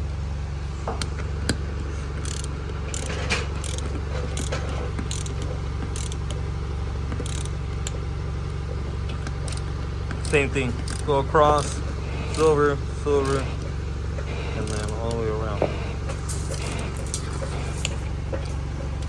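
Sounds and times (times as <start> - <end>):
low hum: 0.0 - 19.0
torque wrench clicks: 2.2 - 6.5, 7.1 - 8.0, 9.2 - 12.5.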